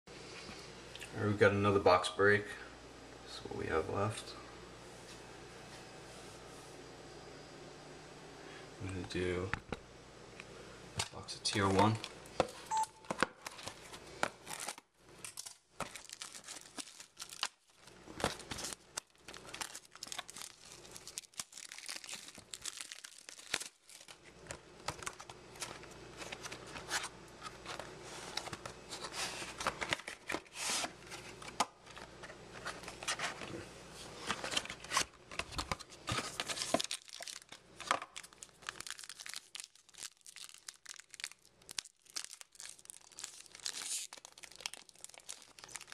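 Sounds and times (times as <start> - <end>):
plastic wrapping tearing and crinkling: 13.4 - 32.0, 34.2 - 45.9.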